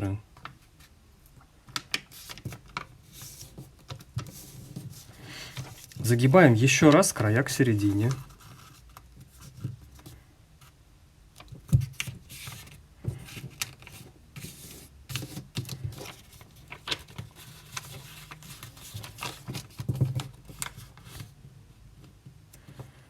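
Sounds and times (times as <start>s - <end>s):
paper rustling and crinkling: 1.6s - 10.2s, 11.4s - 21.4s.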